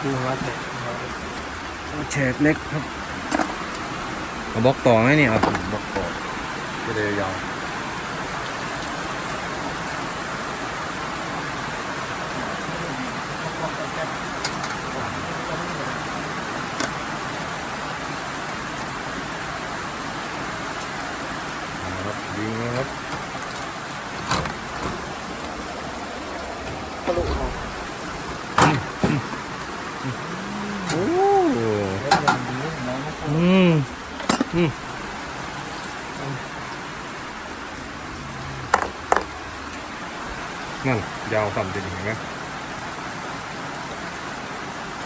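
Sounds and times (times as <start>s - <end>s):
heavy rain hissing: 0.0s - 45.0s
man's drawn-out vocal exclamation: 30.0s - 33.9s.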